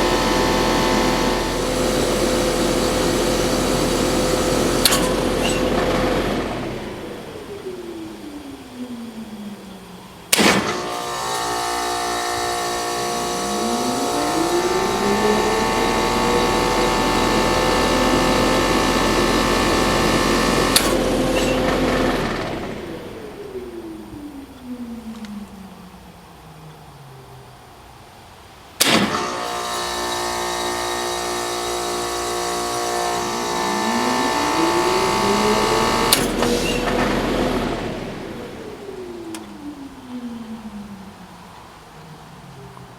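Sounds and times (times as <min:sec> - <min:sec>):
loud clunk of heat pump: 0:00.0 - 0:07.2, 0:10.3 - 0:23.1, 0:28.8 - 0:38.6
heat pump hum: 0:00.0 - 0:24.6, 0:28.8 - 0:41.8
heat pump motor whine: 0:00.0 - 0:25.4, 0:28.8 - 0:41.2.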